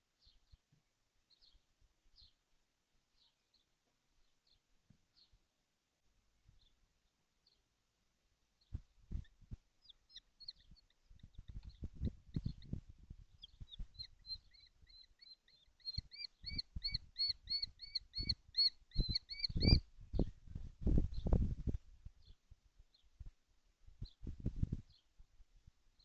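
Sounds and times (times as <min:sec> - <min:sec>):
young kestrels calling: 0:08.7 - 0:19.8.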